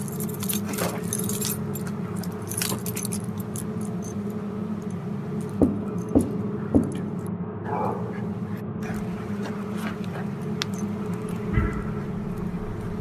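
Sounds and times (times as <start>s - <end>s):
keys jangling: 0.0s - 7.1s, 9.8s - 13.0s
low hum: 0.0s - 13.0s.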